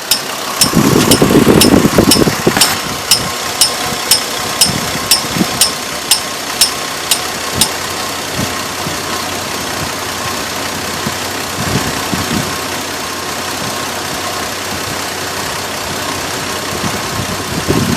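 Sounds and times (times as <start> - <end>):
car engine idling: 0.0 - 17.9
sharp engine tick: 0.1 - 7.8.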